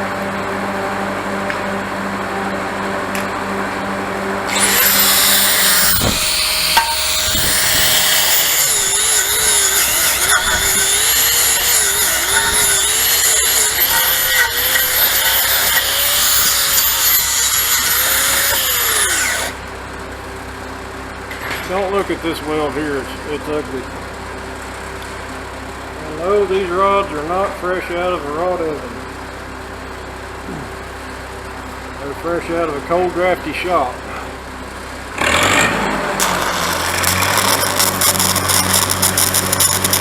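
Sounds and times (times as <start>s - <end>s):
welder engine running: 0.0s - 40.0s
welding arc crackling hiss: 4.5s - 19.6s, 36.2s - 40.0s.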